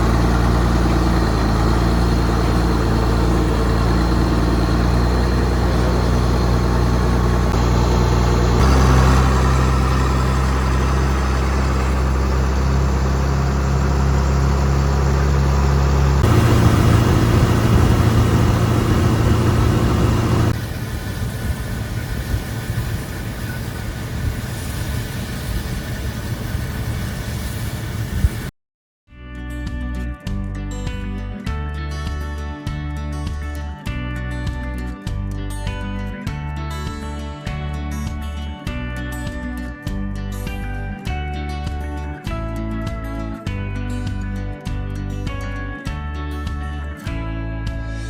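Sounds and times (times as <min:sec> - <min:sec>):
diesel engines running: 0:00.0 - 0:28.5.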